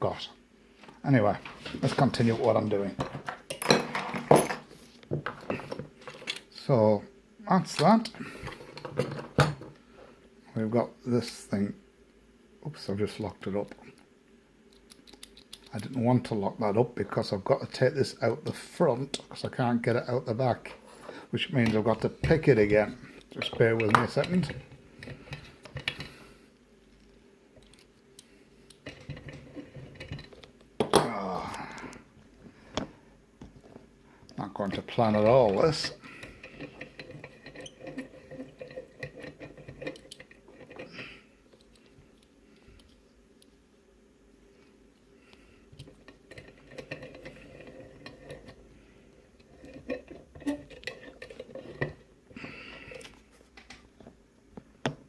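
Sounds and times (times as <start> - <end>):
metal clicks of lock-picking tools: 14.7 - 15.9
person groaning: 31.0 - 32.0.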